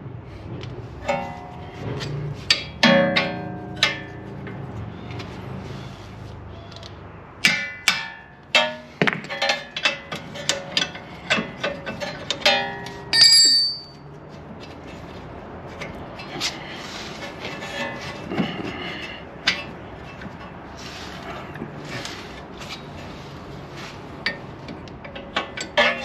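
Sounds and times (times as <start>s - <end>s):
metal tools clinking: 9.3s - 14.0s.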